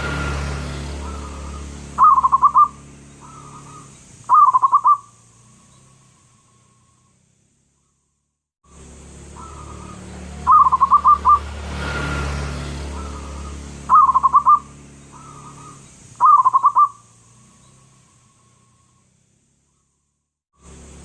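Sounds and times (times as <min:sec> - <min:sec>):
dove cooing: 0:01.0 - 0:05.1, 0:09.3 - 0:11.5, 0:12.8 - 0:17.0.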